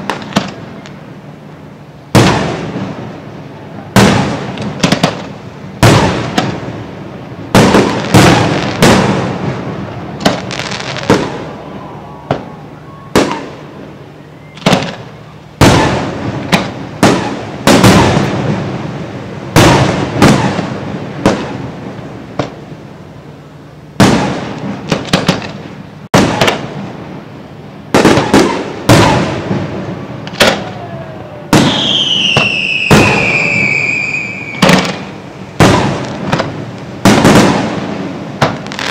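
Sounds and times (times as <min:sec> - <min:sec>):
fireworks booming: 0:00.0 - 0:01.3, 0:02.0 - 0:23.3, 0:23.9 - 0:38.9
high whistle gliding downward: 0:30.6 - 0:34.7.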